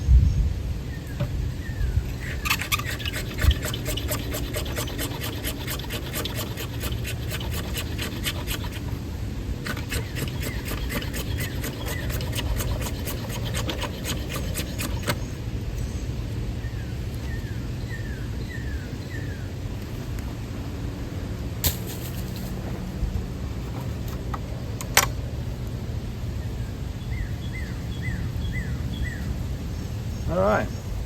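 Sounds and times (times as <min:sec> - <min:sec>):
knife blade scraping wood: 0:02.1 - 0:09.0, 0:09.6 - 0:15.3, 0:21.6 - 0:22.6.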